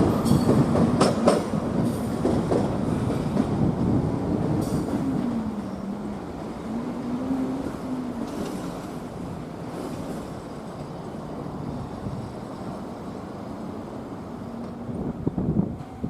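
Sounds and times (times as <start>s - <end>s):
wind on microphone: 0.0s - 8.5s, 14.5s - 16.0s
train rumbling: 0.0s - 16.0s.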